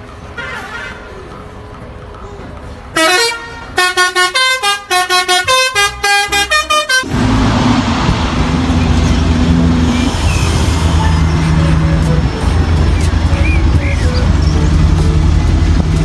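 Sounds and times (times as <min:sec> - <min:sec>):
bus horn tooting a tune: 0:00.0 - 0:07.4, 0:08.9 - 0:16.0
bus engine humming: 0:00.0 - 0:16.0.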